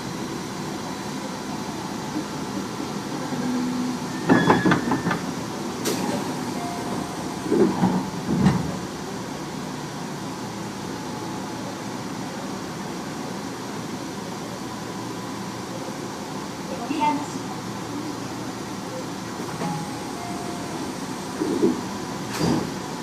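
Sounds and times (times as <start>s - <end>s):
train rolling noise: 0.0s - 23.0s
train knocks: 2.1s - 8.9s, 19.4s - 23.0s.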